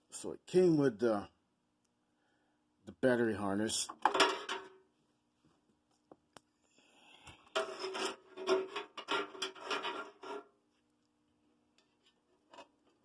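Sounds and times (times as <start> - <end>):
rubbing and scraping handling noise: 7.3 - 11.0, 11.8 - 13.0.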